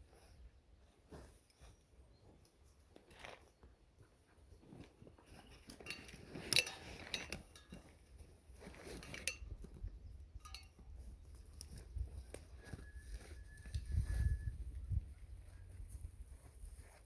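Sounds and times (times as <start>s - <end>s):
small metallic clinks: 5.2s - 14.5s.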